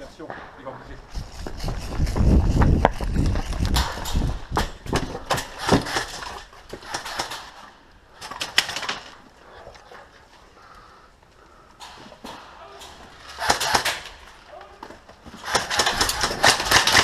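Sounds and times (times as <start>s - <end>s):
footsteps: 0.0s - 7.0s.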